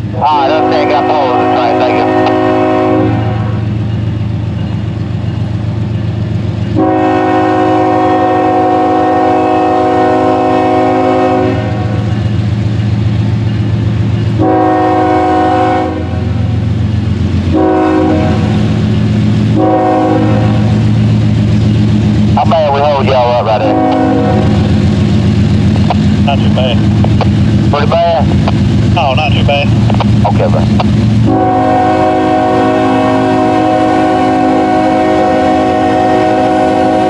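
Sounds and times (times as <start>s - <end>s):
diesel locomotive rumble: 0.0s - 37.0s
train air horn blasts: 0.3s - 3.7s, 6.8s - 12.1s, 14.4s - 16.5s, 17.5s - 18.7s, 19.5s - 20.8s, 23.2s - 24.8s, 31.2s - 37.0s.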